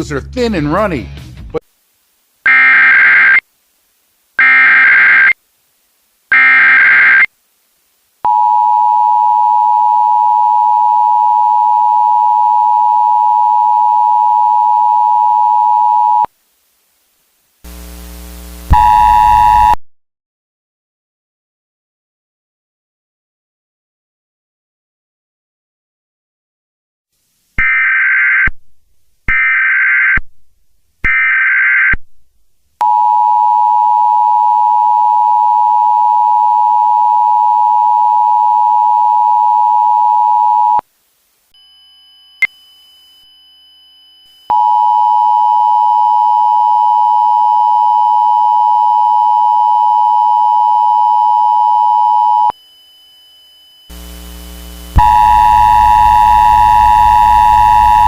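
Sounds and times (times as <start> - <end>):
faint hum: 7.3 - 19.8, 32.8 - 58.0
harsh multi-tone sound: 17.7 - 19.8, 52.5 - 58.0
steady attention tone: 17.7 - 19.8, 41.5 - 45.8, 51.0 - 58.0.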